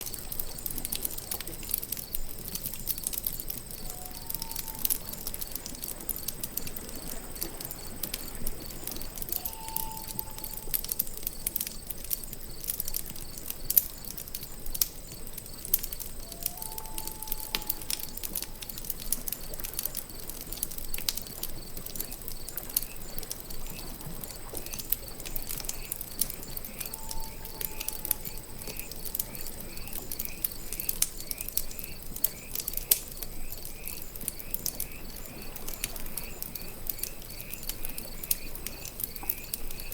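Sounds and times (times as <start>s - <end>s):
campfire crackling and popping: 0.0s - 39.9s
crickets trilling: 0.0s - 39.9s
whistled calls: 3.7s - 5.6s, 8.6s - 11.0s, 16.2s - 18.9s, 25.7s - 30.3s.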